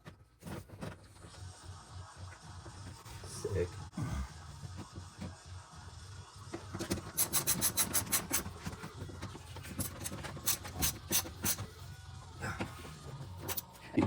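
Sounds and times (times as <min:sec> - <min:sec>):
rubbing and scraping of car trim: 0:06.7 - 0:11.8.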